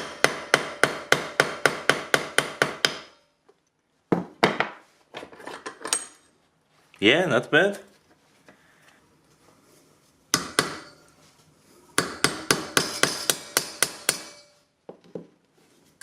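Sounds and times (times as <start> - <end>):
hammer striking metal rod: 0.0 - 3.3, 10.3 - 11.1, 12.0 - 14.6.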